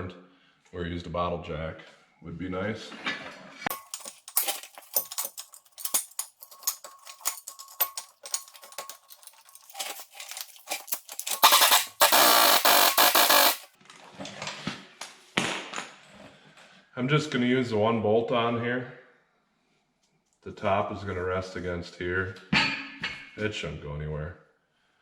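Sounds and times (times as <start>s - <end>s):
metal clinks and taps: 3.7s - 13.7s.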